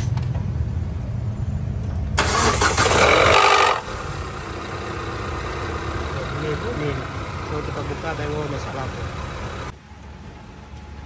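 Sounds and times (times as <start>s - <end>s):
car engine idling: 1.4s - 9.8s
loud harsh engine noise: 1.9s - 9.8s.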